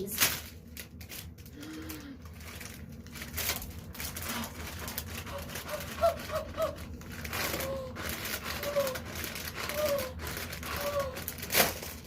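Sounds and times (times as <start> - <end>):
plastic bag crinkling: 0.0 - 12.0.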